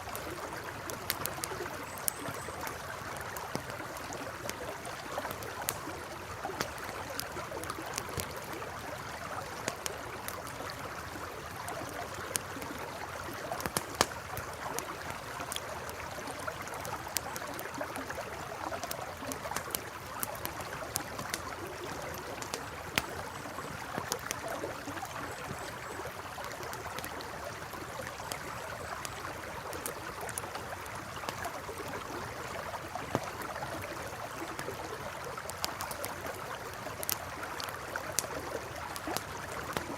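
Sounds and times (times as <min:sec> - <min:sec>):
campfire crackling and popping: 0:00.0 - 0:39.9
river flowing: 0:00.0 - 0:39.9.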